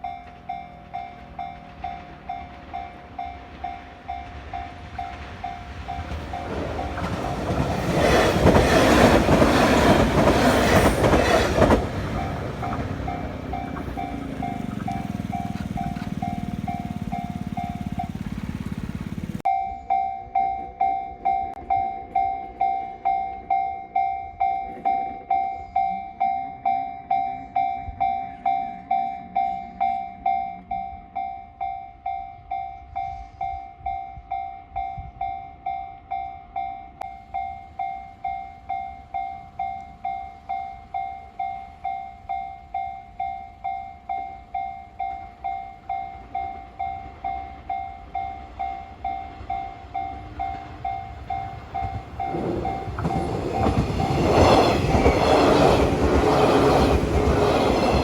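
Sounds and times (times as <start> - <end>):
train rumble: 0.0 - 19.5, 37.0 - 58.0
level crossing bell ringing: 12.0 - 32.4.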